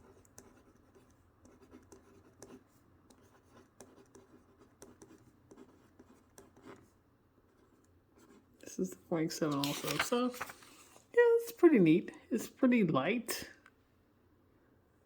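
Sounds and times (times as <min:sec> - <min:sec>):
pencil scratching on paper: 0:00.0 - 0:08.4.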